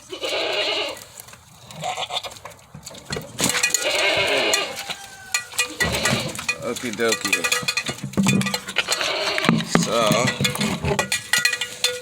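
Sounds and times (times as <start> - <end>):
goats bleating: 0.0 - 1.1, 1.8 - 2.4, 3.6 - 6.8, 8.7 - 11.0
light clatter: 4.5 - 12.0.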